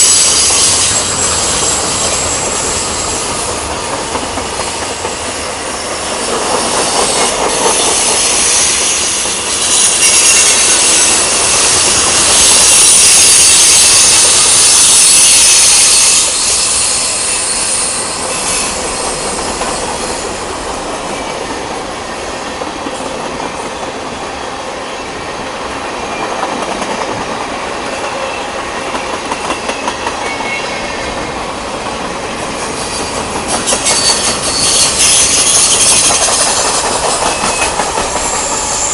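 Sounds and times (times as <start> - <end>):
steel wheels rumbling on rails: 0.0 - 38.9
high-pitched wheel squeal: 5.7 - 20.4, 32.8 - 38.9.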